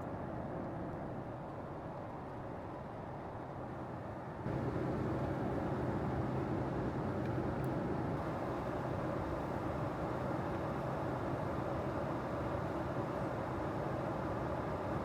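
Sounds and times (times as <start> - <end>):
aircraft cabin engine rush: 4.5 - 11.0.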